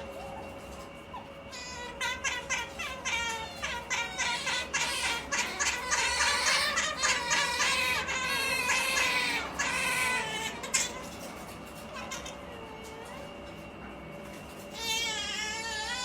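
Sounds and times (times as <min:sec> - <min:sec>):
otters high-pitched calls: 0:01.5 - 0:11.2, 0:14.7 - 0:16.0.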